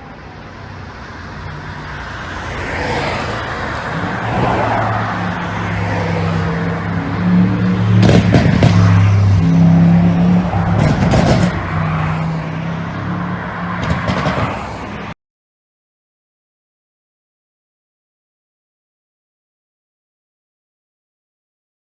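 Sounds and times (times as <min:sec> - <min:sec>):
car engine revving: 0:01.3 - 0:15.1
exhaust pops and crackles: 0:07.9 - 0:09.6, 0:10.4 - 0:12.4, 0:13.8 - 0:14.8.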